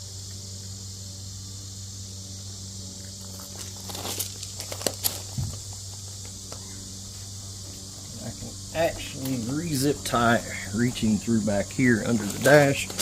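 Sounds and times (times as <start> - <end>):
high hiss: 0.0 - 13.0
hands handling wiring: 12.0 - 13.0.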